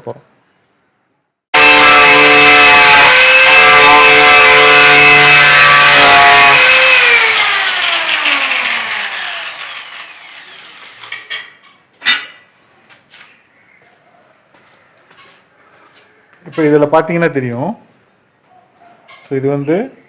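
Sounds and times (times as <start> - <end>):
grinder whining and spinning down: 1.6 - 11.3.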